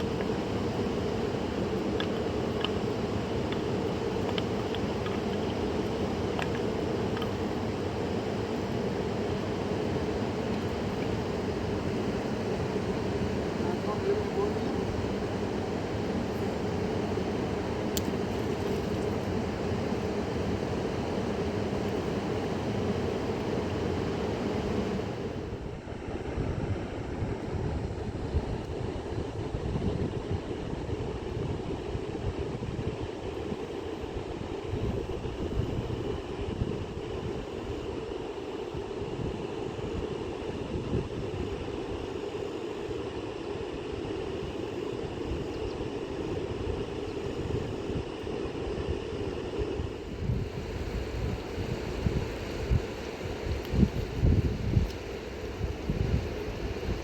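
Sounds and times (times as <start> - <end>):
wind buffeting microphone: 24.8 - 38.1, 45.3 - 57.0.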